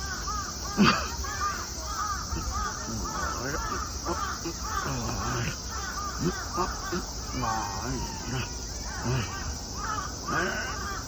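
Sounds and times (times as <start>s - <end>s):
flock of birds calling: 0.0s - 11.0s.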